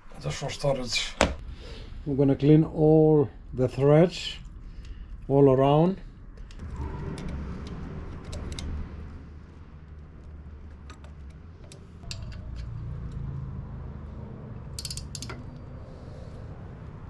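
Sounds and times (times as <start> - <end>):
steady low hum: 0.0 - 17.0
metallic clicks of hand tools: 14.7 - 15.7.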